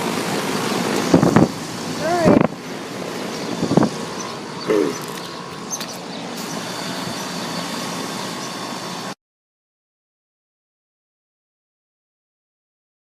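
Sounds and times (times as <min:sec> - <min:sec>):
air conditioner unit humming: 0:00.0 - 0:09.2.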